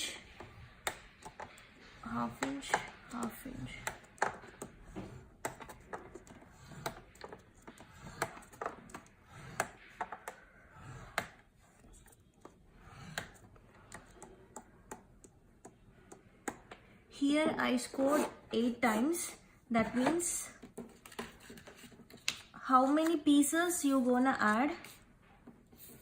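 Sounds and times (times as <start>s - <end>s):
paper and scoring tool tapping: 0.3s - 16.8s.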